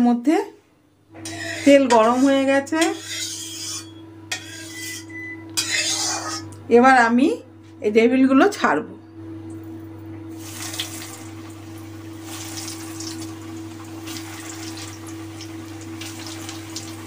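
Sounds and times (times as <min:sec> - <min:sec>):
food deep-frying in oil: 0:10.3 - 0:17.0.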